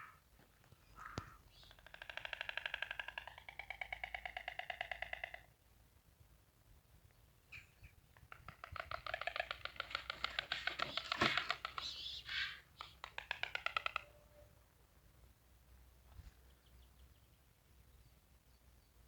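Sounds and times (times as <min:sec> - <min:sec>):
storks bill-clattering: 0:08.8 - 0:14.0.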